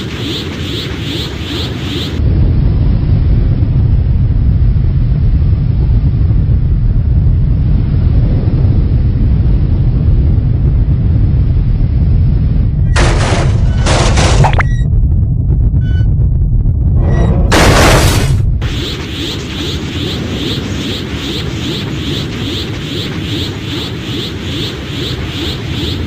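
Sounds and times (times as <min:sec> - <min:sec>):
rapidly pulsing high-pitched sound: 0:00.0 - 0:02.2, 0:16.9 - 0:26.0
deep rumble: 0:00.0 - 0:26.0.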